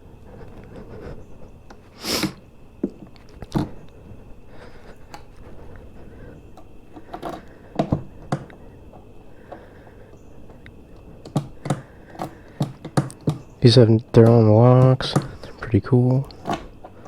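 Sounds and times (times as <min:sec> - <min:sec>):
saddlebags knocking and clunking: 0:07.0 - 0:09.1, 0:11.2 - 0:17.0.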